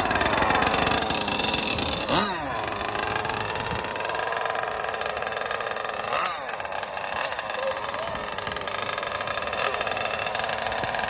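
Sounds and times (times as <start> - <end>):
model boat engines buzzing: 0.0 - 11.0.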